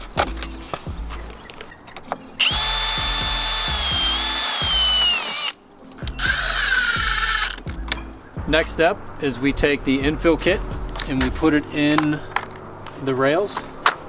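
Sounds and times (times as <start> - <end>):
power drill whining: 2.4 - 7.6.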